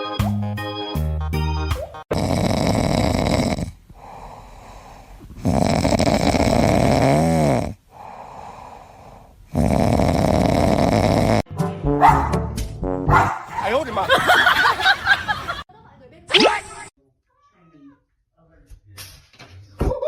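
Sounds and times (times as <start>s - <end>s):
pet snoring: 2.1s - 11.5s.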